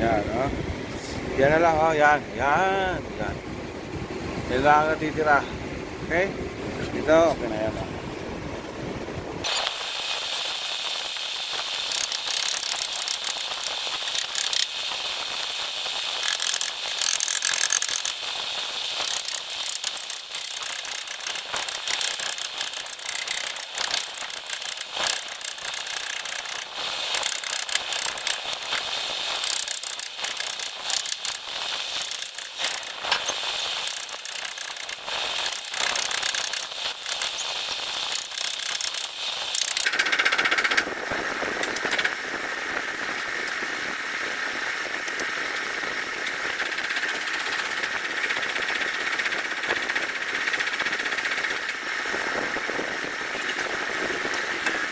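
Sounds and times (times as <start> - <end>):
ratcheting tool clicking: 11.5 - 15.3, 15.9 - 40.9, 41.6 - 42.2, 45.1 - 51.8.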